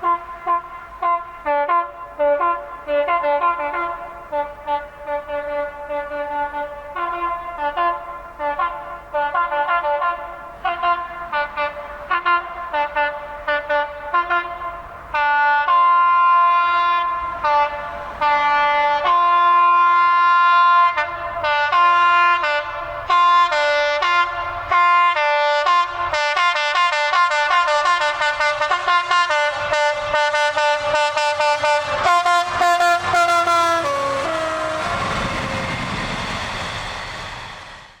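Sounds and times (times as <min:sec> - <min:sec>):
train horns blasting: 0:00.0 - 0:37.7
rushing noise: 0:28.1 - 0:38.0.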